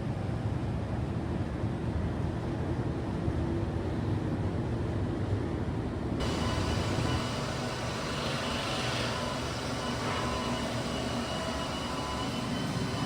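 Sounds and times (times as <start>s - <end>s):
vacuum pump running: 6.2s - 13.0s.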